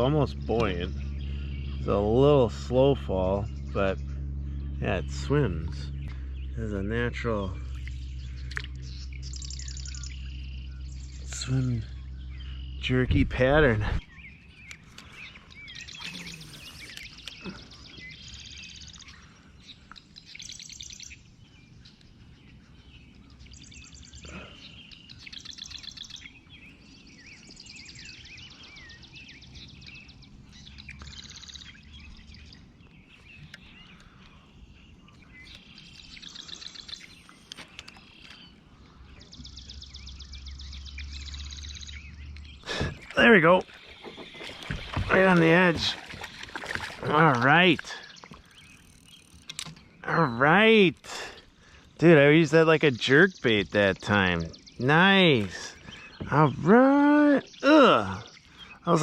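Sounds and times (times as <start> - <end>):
low rumble: 0.0 - 25.3
songbirds singing and trilling: 0.0 - 59.0.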